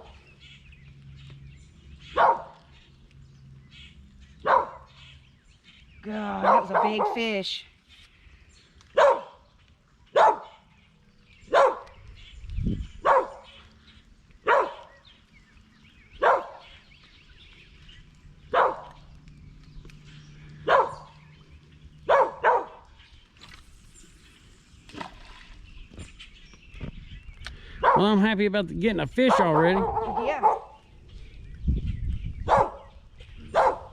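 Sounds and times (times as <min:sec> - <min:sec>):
dog barking: 0:02.1 - 0:02.6, 0:04.4 - 0:04.9, 0:06.4 - 0:07.3, 0:09.0 - 0:09.4, 0:10.2 - 0:10.6, 0:11.5 - 0:11.9, 0:13.0 - 0:13.5, 0:14.4 - 0:14.9, 0:16.2 - 0:16.7, 0:18.5 - 0:18.9, 0:20.6 - 0:21.1, 0:22.1 - 0:22.8, 0:27.8 - 0:28.1, 0:29.3 - 0:30.8, 0:32.5 - 0:33.9.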